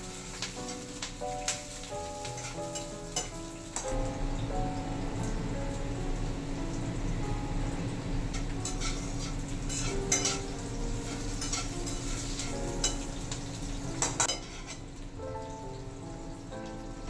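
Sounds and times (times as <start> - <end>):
metal spoon scraping pot: 8.6 - 10.4, 11.0 - 13.0, 14.1 - 14.8.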